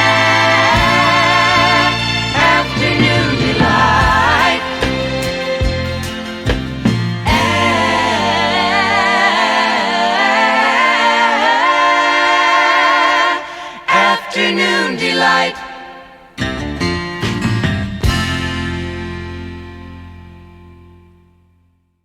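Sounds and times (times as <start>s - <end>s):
voices singing in close harmony: 0.0s - 6.5s, 7.2s - 16.4s.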